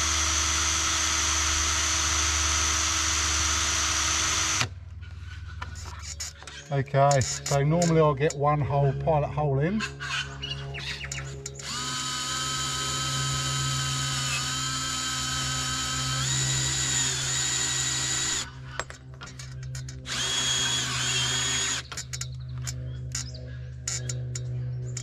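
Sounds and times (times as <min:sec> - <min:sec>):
power drill drilling into metal: 0:00.0 - 0:04.7, 0:11.6 - 0:18.5, 0:20.1 - 0:22.0.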